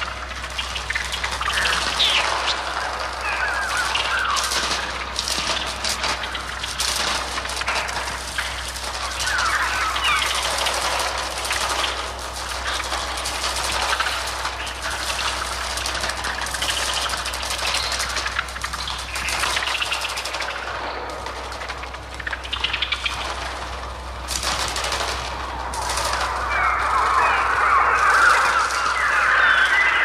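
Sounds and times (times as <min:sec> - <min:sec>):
electronic fluttering wing-beat noise: 0:00.0 - 0:30.0
electronic shrill bird cries: 0:00.9 - 0:04.8, 0:09.1 - 0:10.5, 0:25.8 - 0:30.0.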